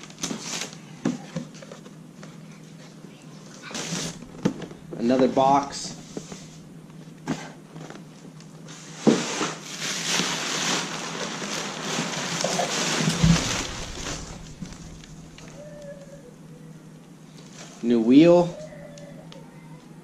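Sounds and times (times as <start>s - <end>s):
heavy thump: 4.0s - 7.1s, 13.1s - 16.7s
sharp knocks: 13.1s - 16.5s.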